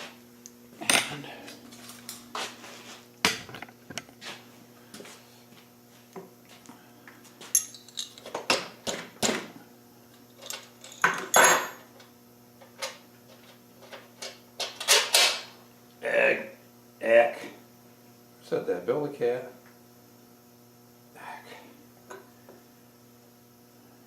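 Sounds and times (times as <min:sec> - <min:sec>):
steady low hum: 0:00.0 - 0:24.0
metal tools clinking and clanking: 0:07.5 - 0:08.3.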